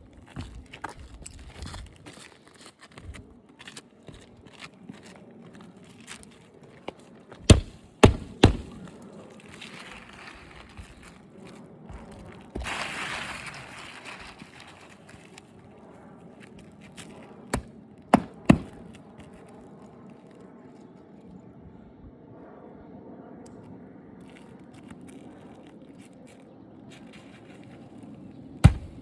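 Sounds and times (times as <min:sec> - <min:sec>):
nails hammered into roof: 0:07.5 - 0:08.9, 0:17.6 - 0:18.8, 0:28.6 - 0:29.0.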